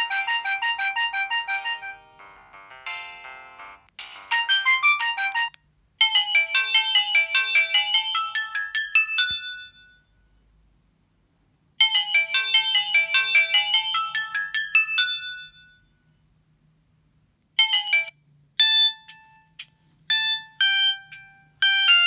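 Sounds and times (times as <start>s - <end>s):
polyphonic phone ringtones: 0.0s - 8.0s.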